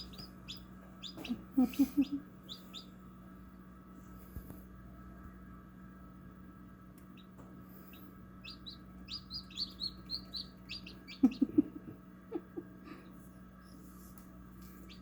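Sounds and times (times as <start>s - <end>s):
chicks peeping: 0.0s - 3.0s, 7.0s - 11.7s, 14.8s - 15.0s
steady low hum: 0.0s - 15.0s.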